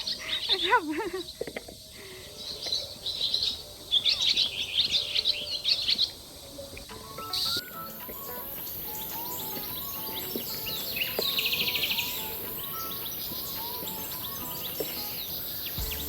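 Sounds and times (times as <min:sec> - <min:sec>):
insect hiss: 0:00.0 - 0:16.0
birds chirping and whistling: 0:02.0 - 0:16.0
rapid pulsing trill: 0:07.9 - 0:16.0.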